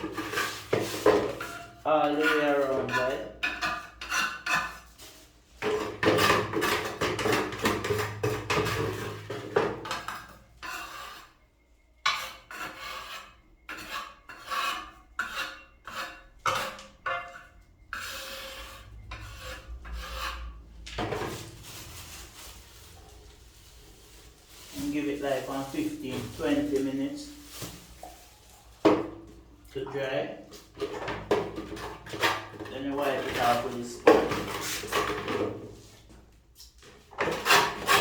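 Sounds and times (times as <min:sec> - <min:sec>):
tool scraping grout: 0:00.0 - 0:05.0, 0:05.6 - 0:11.4, 0:12.0 - 0:21.4, 0:30.0 - 0:35.7, 0:37.1 - 0:38.0.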